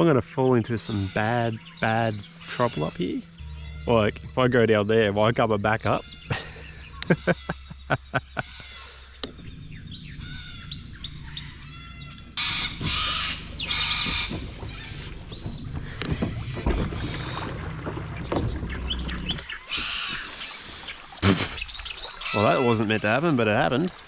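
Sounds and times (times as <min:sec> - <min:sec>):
steady low rumble: 0:00.0 - 0:19.7
birds calling: 0:00.0 - 0:24.0.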